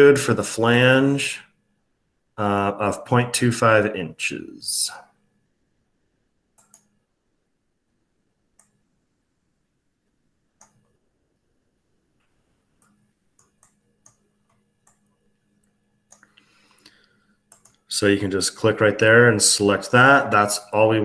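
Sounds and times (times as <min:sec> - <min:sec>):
computer mouse clicking: 0:06.6 - 0:07.0, 0:08.6 - 0:08.8, 0:10.6 - 0:11.0, 0:12.8 - 0:17.8.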